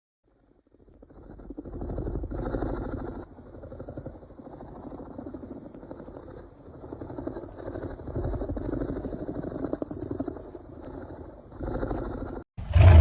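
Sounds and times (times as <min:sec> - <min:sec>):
deep rumbling creature growl: 0:12.2 - 0:13.0.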